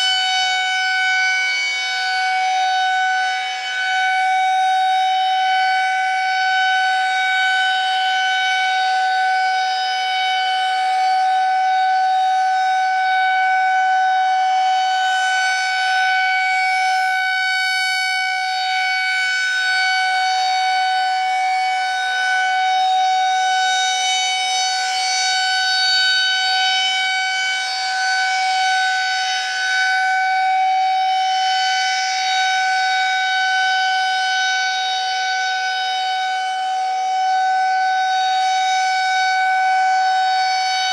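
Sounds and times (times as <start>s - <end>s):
rotating warning siren steady tone: 0.0s - 40.9s.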